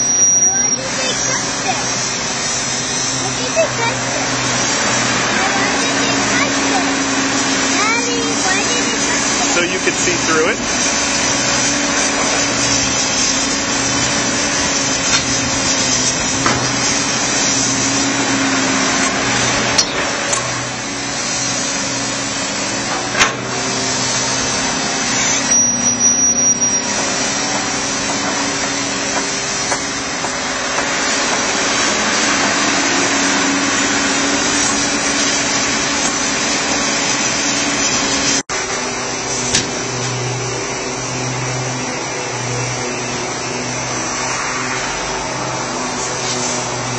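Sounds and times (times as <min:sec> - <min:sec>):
diesel engine running under load: 0:00.0 - 0:46.9.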